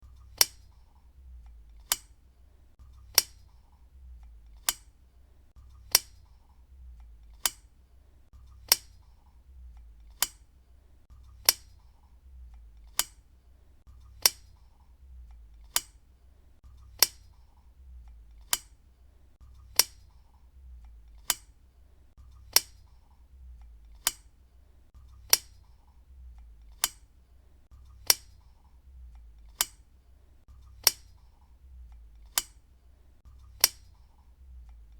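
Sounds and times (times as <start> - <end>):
desk lamp switch clicking: 0.2 - 2.2, 3.0 - 5.0, 5.7 - 7.8, 8.4 - 10.5, 11.2 - 13.3, 14.0 - 16.1, 16.8 - 18.9, 19.6 - 21.6, 22.3 - 24.4, 25.2 - 27.2, 27.9 - 30.0, 30.7 - 32.7, 33.4 - 34.9.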